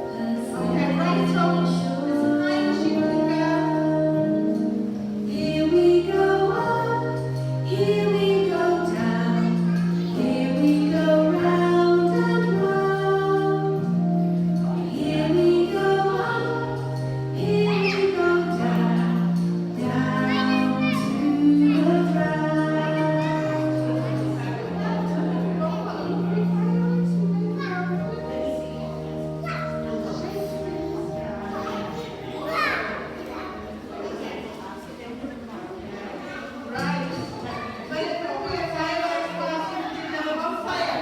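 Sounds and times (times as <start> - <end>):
woman singing a children's song: 0.0 - 25.6.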